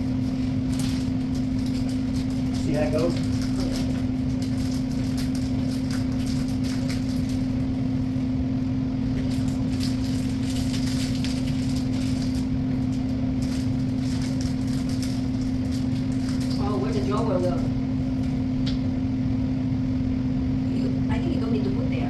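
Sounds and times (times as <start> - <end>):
steady mechanical hum: 0.0 - 22.0.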